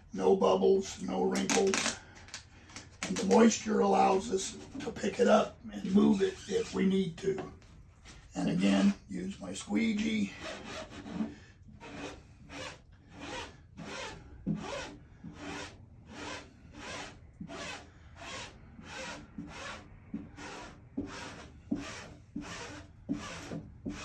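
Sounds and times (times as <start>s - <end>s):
squeegee squeak: 5.8s - 7.0s.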